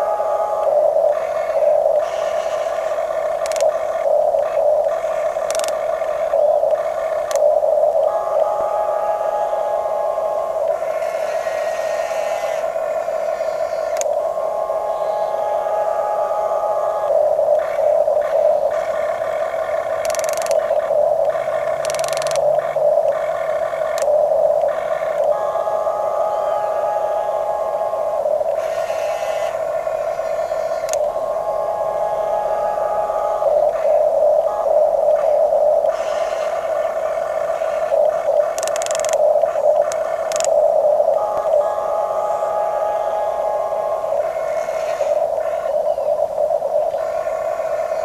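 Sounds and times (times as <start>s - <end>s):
toy excavator motors whining: 0.0s - 48.0s.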